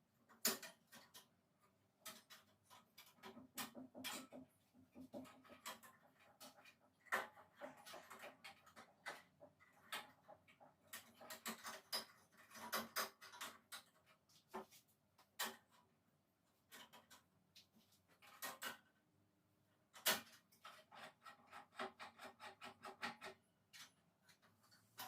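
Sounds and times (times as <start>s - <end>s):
clicks and knocks of handling parts: 0.1s - 19.1s, 19.8s - 25.0s.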